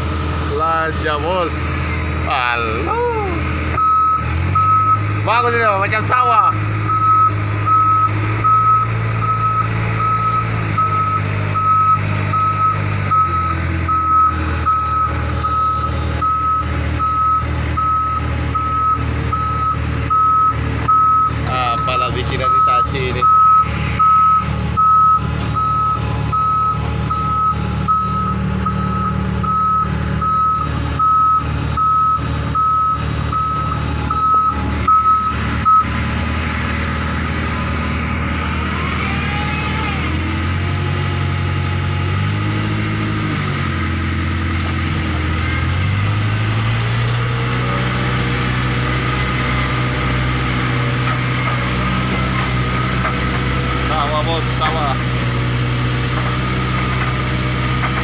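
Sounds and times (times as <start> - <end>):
diesel engine revving: 0.0 - 58.0
reversing alarm beeping: 3.8 - 5.2, 6.8 - 36.0, 51.2 - 53.4.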